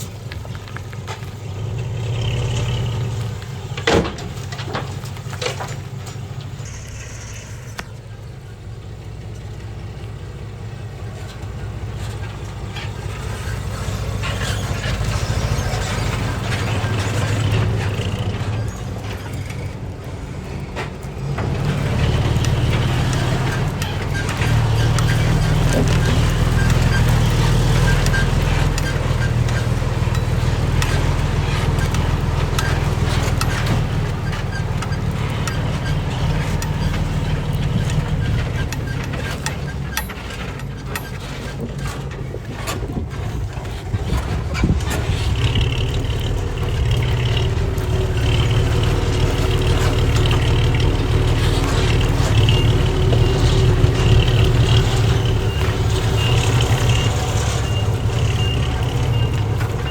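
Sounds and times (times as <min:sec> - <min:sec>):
heavy diesel machinery under load: 0:00.0 - 0:59.9
reversing alarm beeping: 0:06.7 - 0:07.9, 0:52.2 - 0:59.9.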